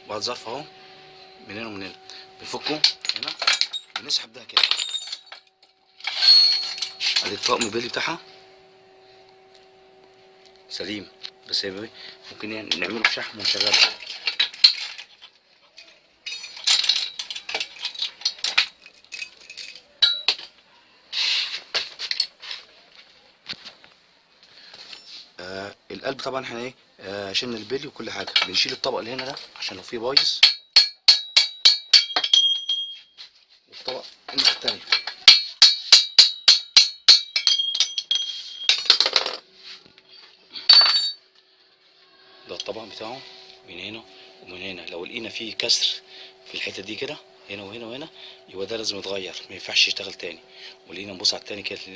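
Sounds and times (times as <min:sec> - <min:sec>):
steel bearings clinking and rattling: 0:02.4 - 0:08.2, 0:12.4 - 0:20.6, 0:30.1 - 0:33.1, 0:34.3 - 0:39.4, 0:40.6 - 0:41.2
hammer striking metal: 0:30.2 - 0:33.0, 0:34.9 - 0:39.0.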